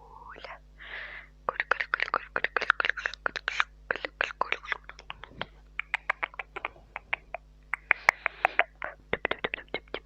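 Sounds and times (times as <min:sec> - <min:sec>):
breathy hiss: 0:00.0 - 0:01.4
wet tongue and lip clicks: 0:01.6 - 0:10.0.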